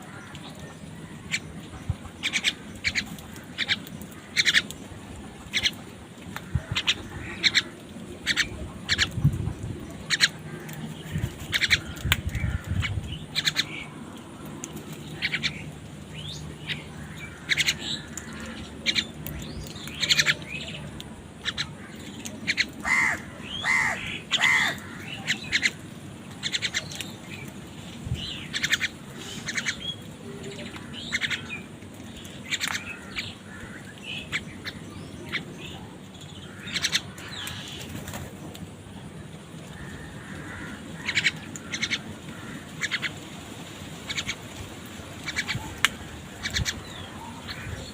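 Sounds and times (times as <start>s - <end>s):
crows cawing: 0.0s - 0.4s, 6.3s - 8.5s, 10.1s - 14.5s, 17.0s - 19.4s, 21.5s - 25.8s, 32.6s - 34.8s, 36.4s - 37.8s, 39.7s - 43.2s, 46.5s - 47.9s.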